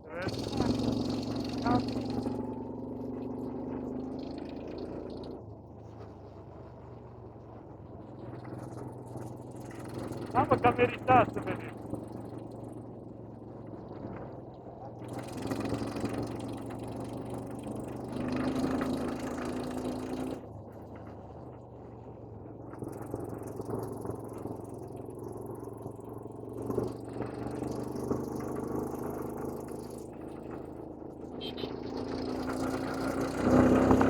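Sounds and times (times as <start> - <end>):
vehicle engine running: 0.0 - 34.0.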